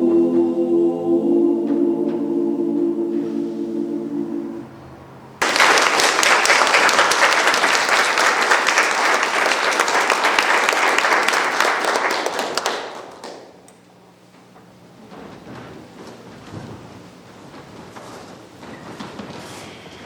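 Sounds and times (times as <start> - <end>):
audience applause: 5.4 - 13.6.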